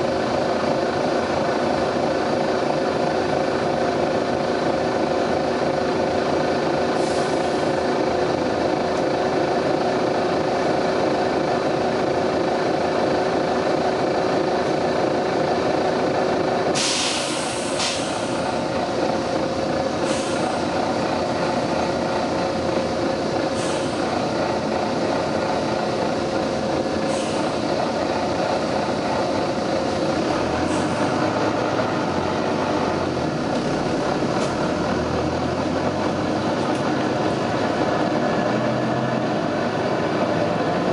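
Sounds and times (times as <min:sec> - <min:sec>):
bus diesel engine running: 0:00.0 - 0:40.9
compressed air hissing: 0:16.8 - 0:18.5, 0:20.0 - 0:20.7, 0:23.5 - 0:24.1, 0:27.1 - 0:27.6.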